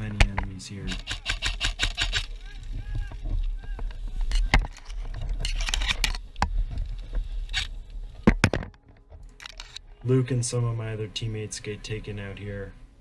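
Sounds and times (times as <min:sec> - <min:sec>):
sharp clicks: 0:00.1 - 0:02.6
gear rattling and rustling: 0:00.9 - 0:09.8.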